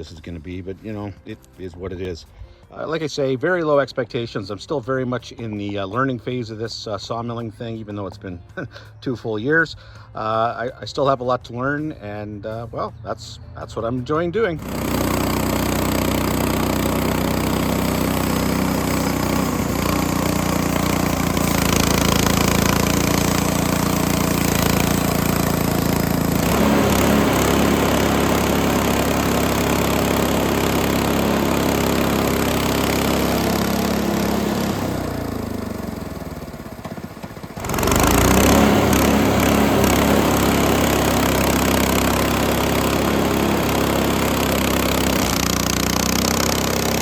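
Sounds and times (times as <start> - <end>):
bandsaw cutting wood: 14.5 - 47.0
small gasoline engine running: 14.5 - 47.0.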